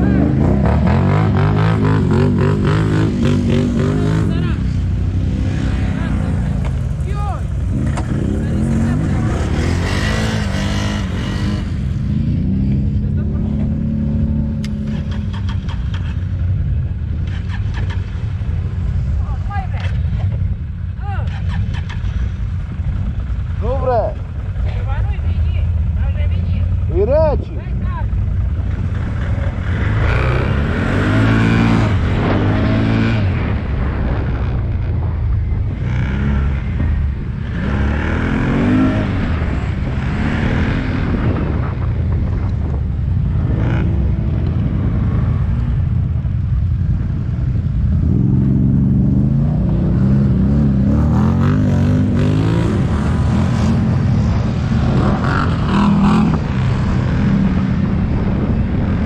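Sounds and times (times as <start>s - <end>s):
atv engine revving: 0.0s - 16.3s, 28.0s - 35.1s, 35.7s - 46.6s, 47.2s - 59.0s.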